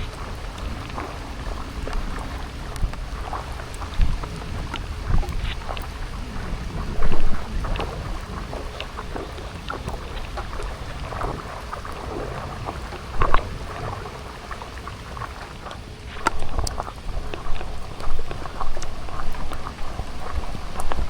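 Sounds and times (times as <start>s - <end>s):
rain hissing: 0.0s - 21.0s
raindrops tapping close by: 0.0s - 21.0s.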